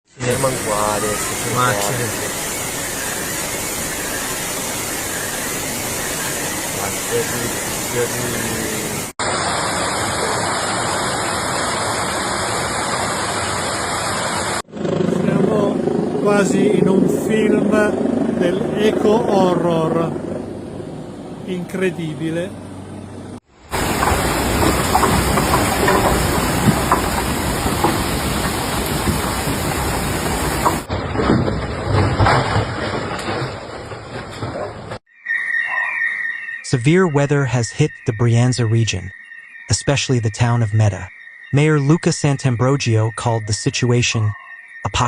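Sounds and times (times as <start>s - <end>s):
heavy water rushing: 0.2s - 14.7s, 23.6s - 30.9s.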